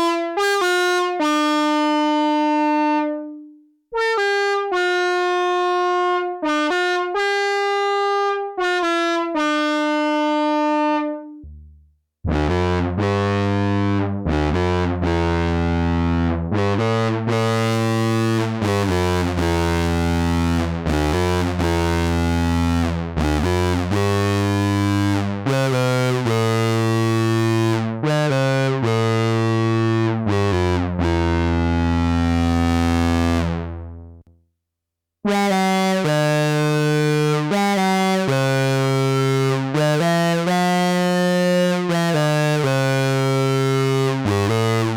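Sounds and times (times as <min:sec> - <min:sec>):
low synthesizer bass notes: 0:10.7 - 0:34.2, 0:35.3 - 0:44.9.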